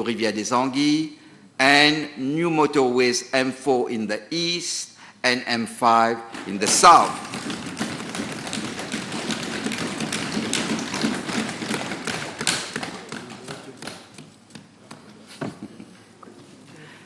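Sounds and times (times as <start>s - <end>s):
people thumping on wooden desks: 6.3s - 15.8s.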